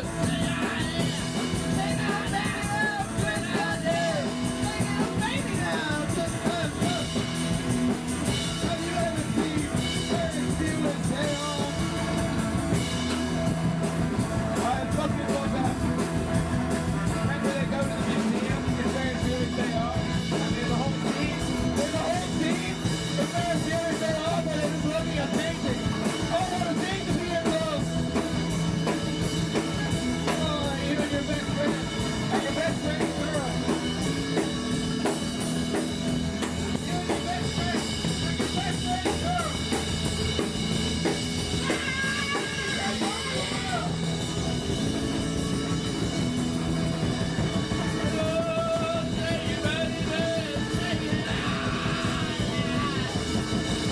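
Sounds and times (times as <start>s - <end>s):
bass: 0.0s - 53.9s
drum kit: 0.0s - 53.9s
person singing: 47.7s - 53.8s.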